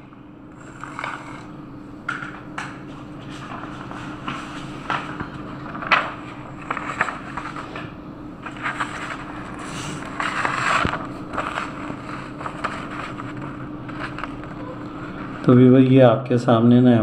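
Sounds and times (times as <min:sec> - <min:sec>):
steady low hum: 0:00.0 - 0:17.0
scraping and rustling handling noises: 0:02.8 - 0:15.7.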